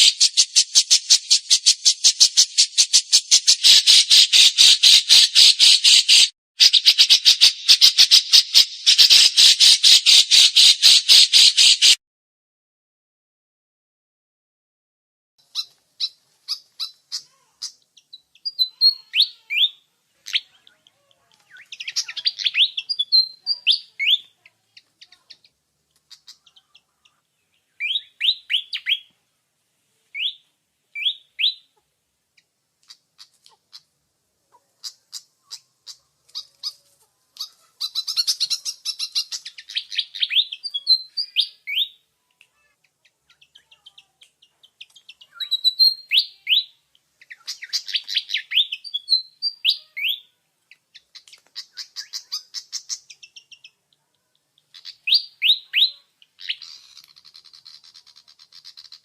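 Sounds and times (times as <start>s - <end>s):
rapid chattering bird trills: 0.0s - 12.0s, 21.5s - 27.2s, 34.5s - 41.8s, 42.6s - 46.6s, 47.2s - 53.9s, 54.6s - 59.0s
songbird chirping and whistling: 0.0s - 12.0s, 15.5s - 20.7s, 21.4s - 29.2s, 30.1s - 31.8s, 37.4s - 42.1s, 42.8s - 53.8s, 54.6s - 59.0s.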